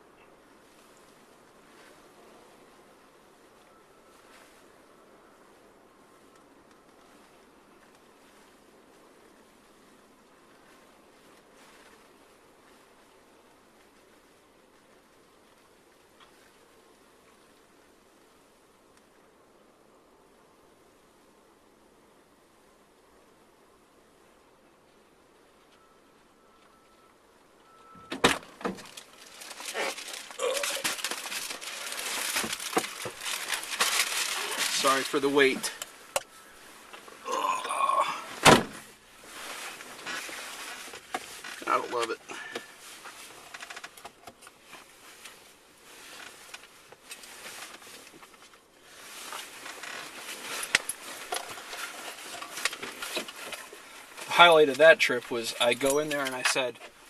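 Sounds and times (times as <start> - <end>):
rustling and crinkling: 3.5 - 4.8, 6.2 - 17.6, 27.7 - 57.0.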